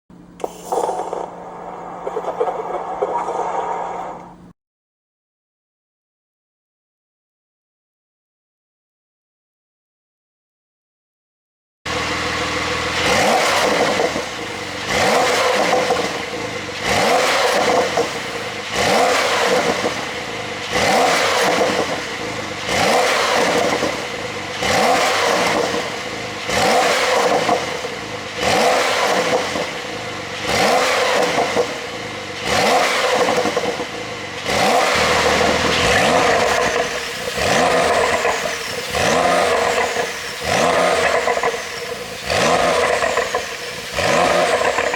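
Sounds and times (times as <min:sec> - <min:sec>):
car engine revving: 0:11.9 - 0:44.9
exhaust popping and crackling: 0:32.4 - 0:44.9.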